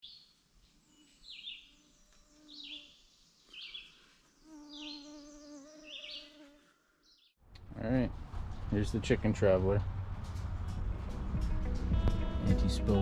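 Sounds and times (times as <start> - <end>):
bird chirping: 0.0 - 7.4
insect buzzing: 0.9 - 7.1.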